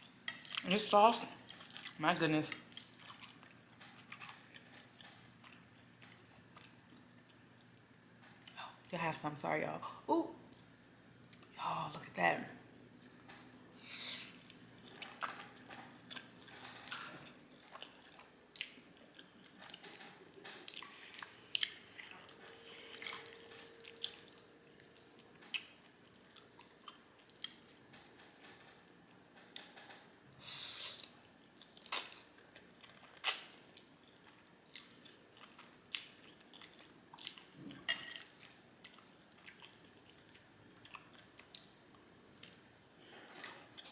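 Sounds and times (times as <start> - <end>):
chewing noodles: 1.4 - 2.0, 2.7 - 7.0, 20.6 - 27.8, 31.0 - 41.8.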